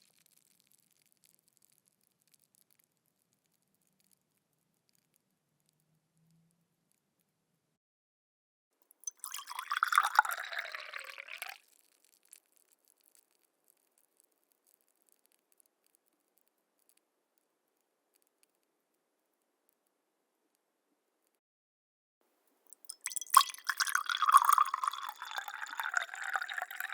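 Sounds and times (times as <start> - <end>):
faint drips: 9.0 - 11.6, 22.7 - 26.9
liquid pouring into a glass: 9.0 - 11.6, 22.7 - 26.9.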